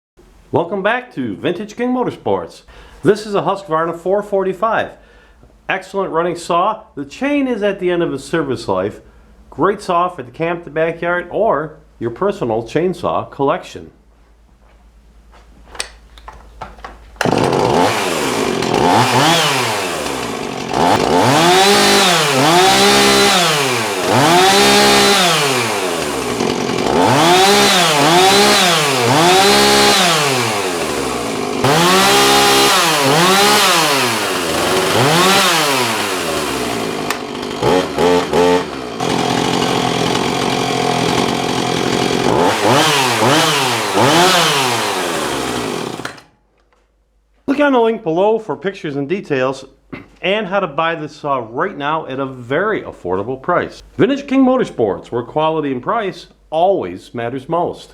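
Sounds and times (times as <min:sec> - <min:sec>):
chainsaw engine revving: 0:17.2 - 0:46.3.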